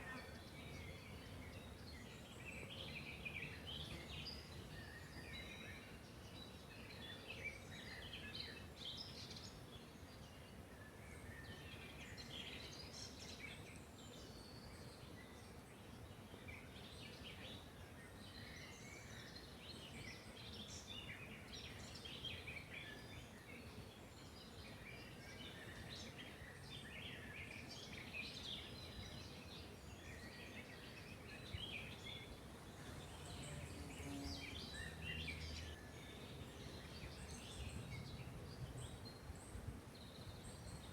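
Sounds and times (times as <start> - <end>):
low steady background noise: 0.0 - 40.9
songbirds chirping: 0.0 - 40.9.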